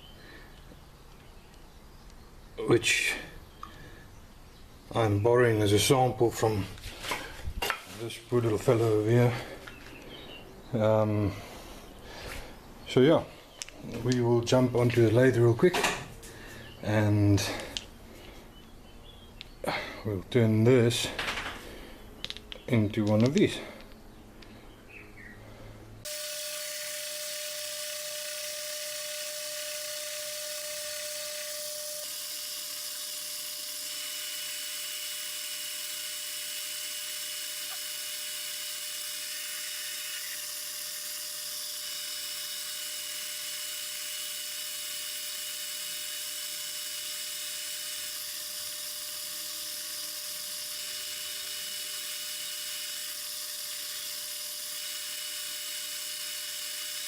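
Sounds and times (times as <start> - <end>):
lathe whining: 26.0 - 57.0
higher cutting tone: 26.1 - 54.9.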